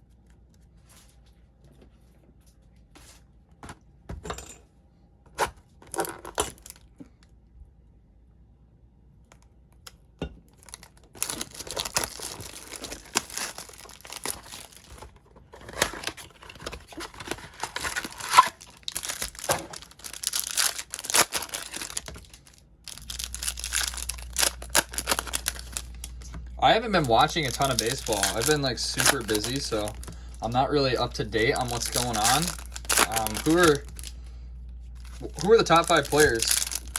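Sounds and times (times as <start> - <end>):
foil wrappers torn and crinkled: 5.8 - 6.9, 10.6 - 34.2, 34.8 - 36.9.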